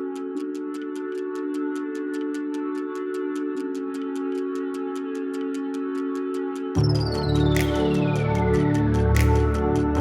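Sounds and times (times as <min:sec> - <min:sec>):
quick hi-hat ticks: 0:00.0 - 0:10.0
sustained synth chords: 0:06.8 - 0:10.0.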